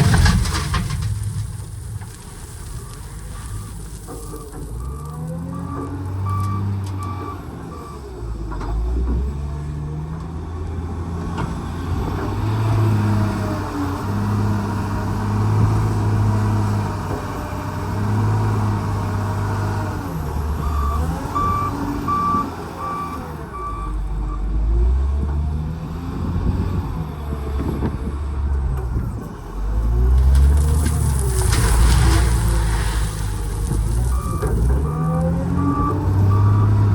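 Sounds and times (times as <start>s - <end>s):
diesel engine revving: 0.0s - 36.9s
reversing alarm beeping: 2.8s - 8.1s, 20.6s - 24.4s, 34.0s - 36.9s.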